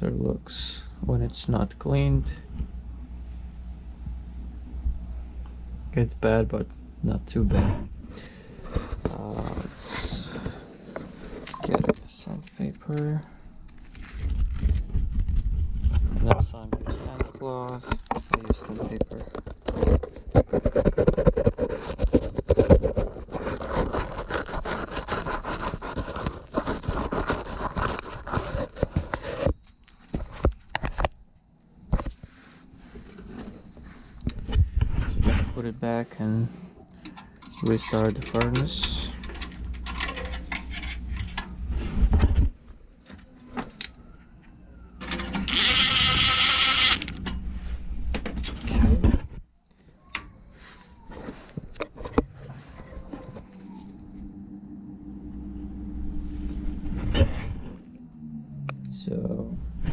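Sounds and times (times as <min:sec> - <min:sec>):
sandpaper scraping metal rod: 0:23.4 - 0:28.6.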